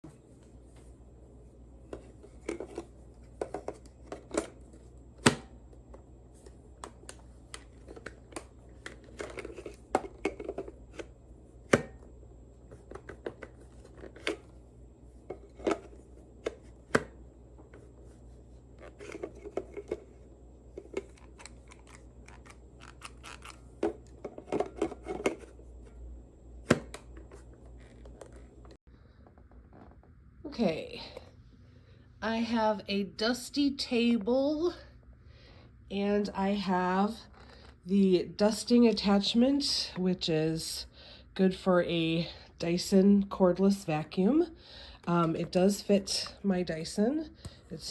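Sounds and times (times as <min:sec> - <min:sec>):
faint steady hum: 0:00.0 - 0:47.9
rustling and scraping: 0:17.6 - 0:26.0.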